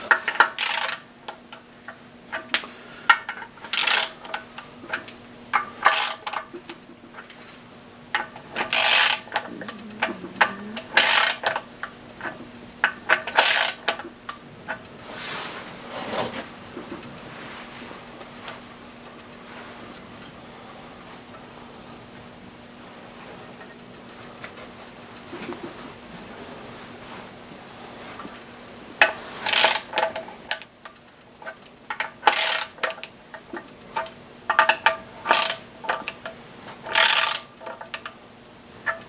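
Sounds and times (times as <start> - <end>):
ratchet wrench clicking: 0.6 - 1.0, 3.7 - 4.2, 5.8 - 6.2, 8.6 - 11.6, 13.3 - 13.8, 29.5 - 30.1, 32.3 - 32.9, 35.3 - 35.6, 36.9 - 37.5
small metal clicks: 8.2 - 11.6, 29.5 - 38.1.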